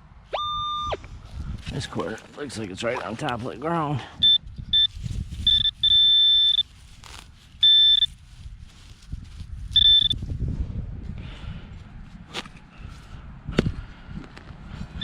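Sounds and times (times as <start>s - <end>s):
metal detector beeping: 0.3s - 1.0s, 4.2s - 6.8s, 7.6s - 8.2s, 9.7s - 10.2s
low rumble: 10.3s - 12.1s.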